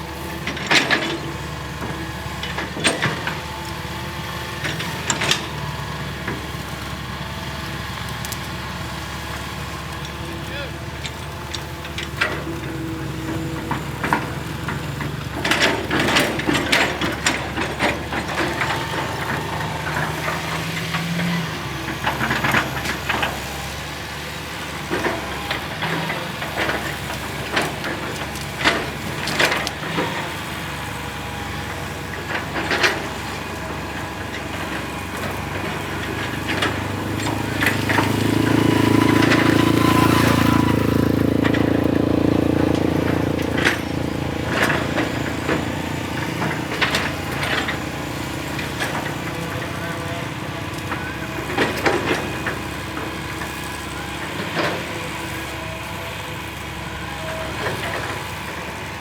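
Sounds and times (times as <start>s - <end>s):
diesel engine running: 0.0s - 59.0s
machine knocks and clanks: 10.9s - 23.5s, 24.8s - 55.1s.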